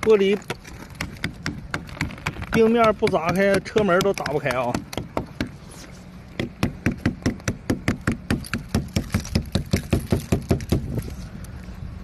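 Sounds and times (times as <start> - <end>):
rubber mallet striking ice: 2.5 - 5.6.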